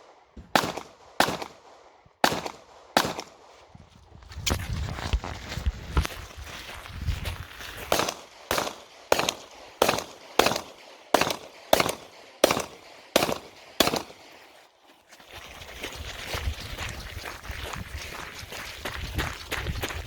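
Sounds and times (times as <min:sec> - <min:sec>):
pistol shots: 0:00.0 - 0:03.6, 0:07.9 - 0:14.5.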